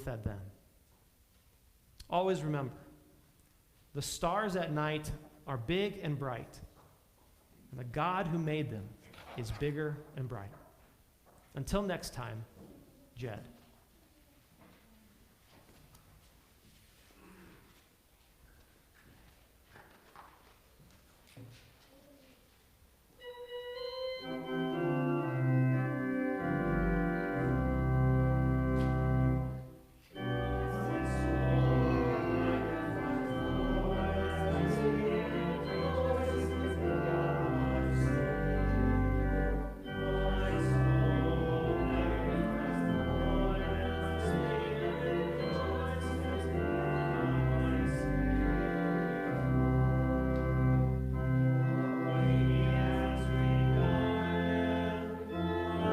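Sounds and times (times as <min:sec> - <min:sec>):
church organ playing: 0:23.2 - 0:55.9.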